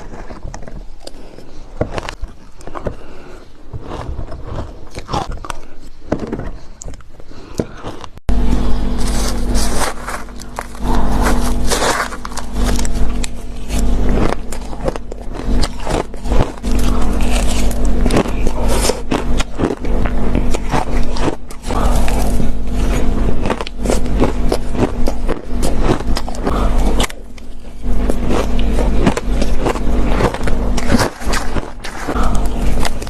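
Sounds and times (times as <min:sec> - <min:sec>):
steady low hum: 0:00.0 - 0:33.0
ice crunching bites: 0:09.0 - 0:22.4, 0:23.0 - 0:33.0.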